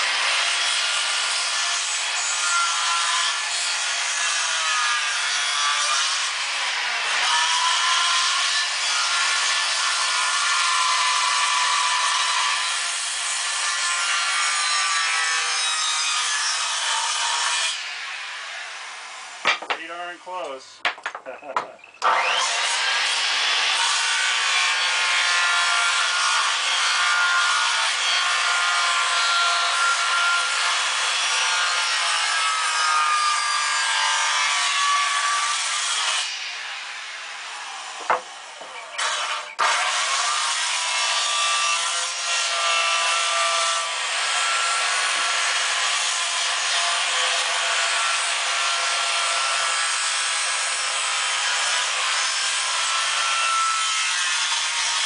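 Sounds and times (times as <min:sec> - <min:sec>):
power tool working wood: 0:20.4 - 0:55.0.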